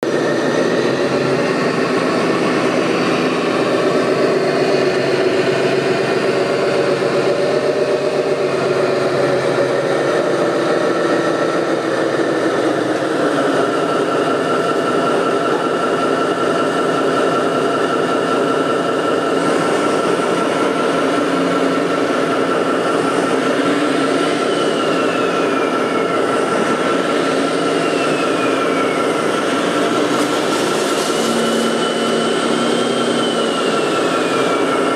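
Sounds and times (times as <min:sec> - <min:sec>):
high whine: 0:00.0 - 0:34.9
short falling whines: 0:20.5 - 0:34.9
mechanical running noise: 0:28.2 - 0:34.9.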